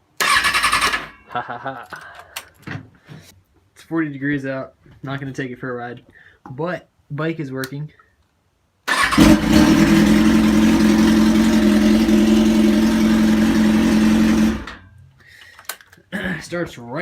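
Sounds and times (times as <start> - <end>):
starter motor cranking engine: 0.2 - 1.1, 8.9 - 14.8.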